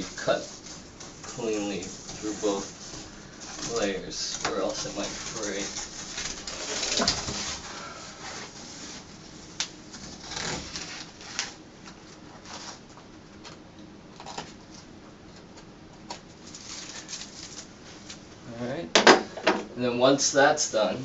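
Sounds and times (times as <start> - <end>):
paper scraping against wall: 0.0 - 12.9.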